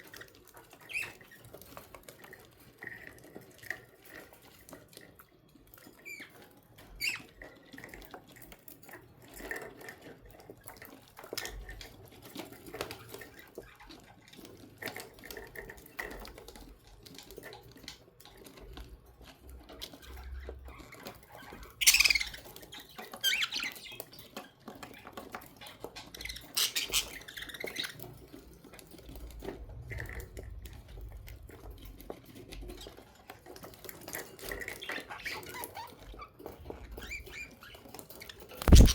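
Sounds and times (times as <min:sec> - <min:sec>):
budgerigars chirping: 0:21.8 - 0:22.4, 0:26.5 - 0:27.6, 0:38.6 - 0:38.9
sharp falling bird calls: 0:38.6 - 0:38.9.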